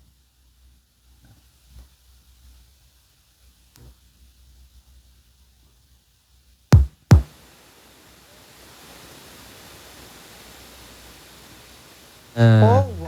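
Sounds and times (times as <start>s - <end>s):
faint steady hiss: 0.0s - 13.0s
deep drum beats: 6.8s - 7.3s.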